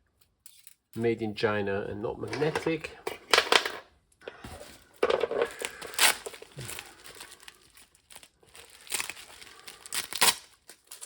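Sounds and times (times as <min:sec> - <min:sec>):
packaging crinkling and rustling: 0:04.3 - 0:11.0.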